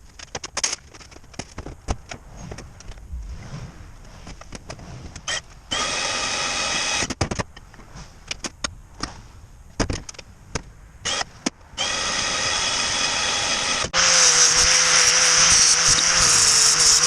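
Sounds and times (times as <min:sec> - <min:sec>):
power tool motor whirring: 0:05.3 - 0:07.1, 0:11.1 - 0:17.0.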